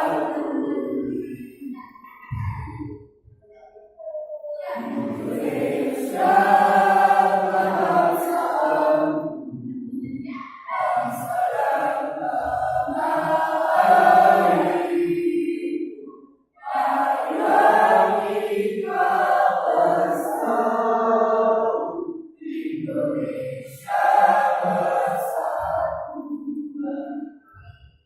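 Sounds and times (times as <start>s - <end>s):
choir singing: 0.0s - 2.7s, 4.5s - 9.6s, 10.7s - 27.7s.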